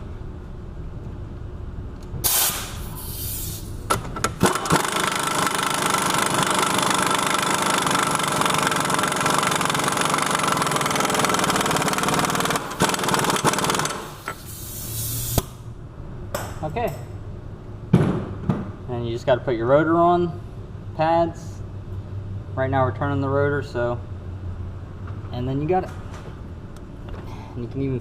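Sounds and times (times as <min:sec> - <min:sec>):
impact wrench hammering: 0:04.4 - 0:14.4.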